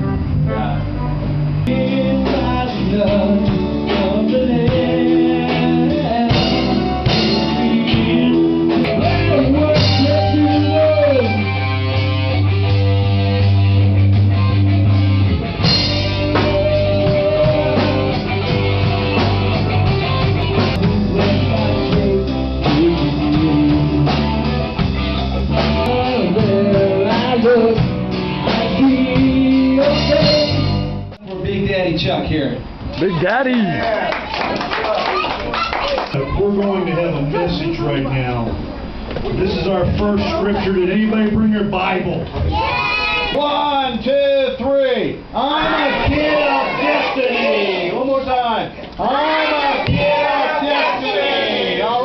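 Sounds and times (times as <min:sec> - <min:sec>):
drums: 0:00.0 - 0:33.5, 0:38.4 - 0:40.4, 0:41.3 - 0:47.2, 0:49.1 - 0:51.9
guitar: 0:00.0 - 0:34.2, 0:35.1 - 0:44.6, 0:45.2 - 0:52.0
person singing: 0:01.6 - 0:11.6, 0:16.1 - 0:18.9, 0:20.6 - 0:24.6, 0:25.5 - 0:30.8.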